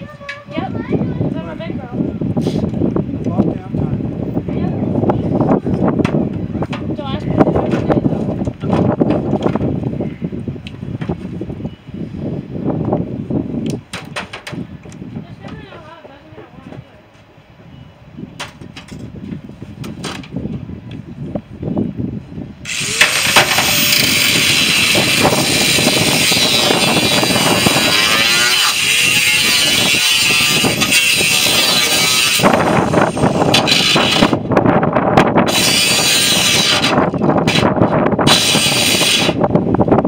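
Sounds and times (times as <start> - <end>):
power tool cutting metal: 22.7 - 34.4, 35.5 - 37.7, 38.3 - 39.4.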